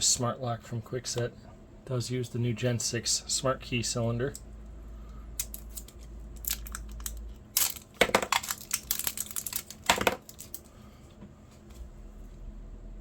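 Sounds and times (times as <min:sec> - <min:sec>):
packaging rustling and clicking: 0:05.4 - 0:10.7.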